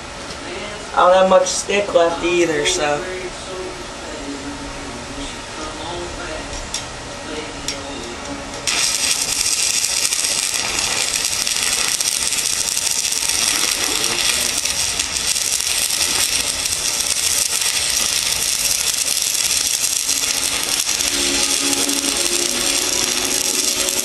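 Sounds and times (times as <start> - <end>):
arc welder crackling hiss: 8.5 - 24.0.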